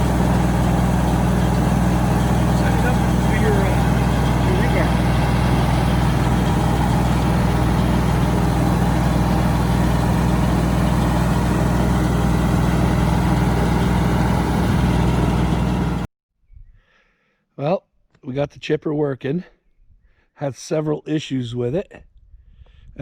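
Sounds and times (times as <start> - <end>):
tractor engine running: 0.0 - 16.1.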